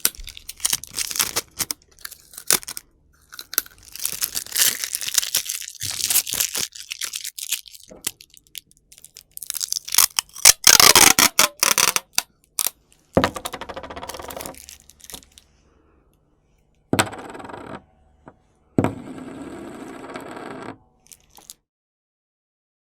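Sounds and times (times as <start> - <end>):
tape ripping off roll: 3.5 - 7.4, 9.2 - 12.7.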